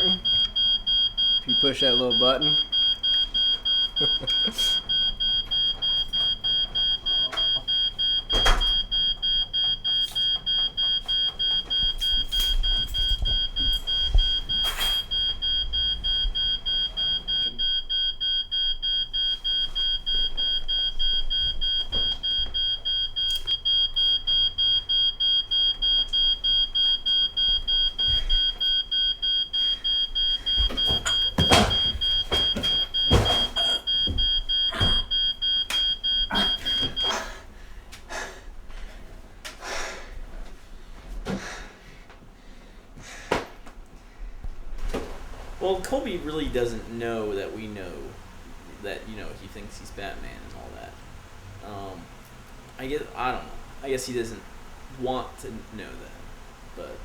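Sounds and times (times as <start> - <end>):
smoke alarm beeping: 0.0 - 41.9, 44.5 - 57.0
knocks: 30.5 - 35.2.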